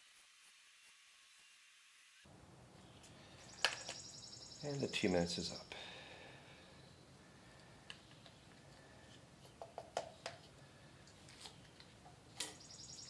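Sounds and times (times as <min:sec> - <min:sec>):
small objects clicking and tapping: 0:03.6 - 0:04.0, 0:09.4 - 0:12.6.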